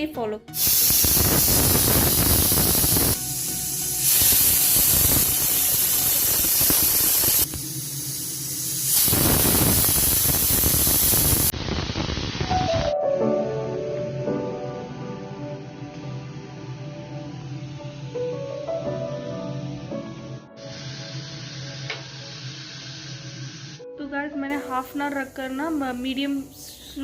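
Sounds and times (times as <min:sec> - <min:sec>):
pressure cooker whistle hissing: 0:00.6 - 0:12.9, 0:20.0 - 0:23.8.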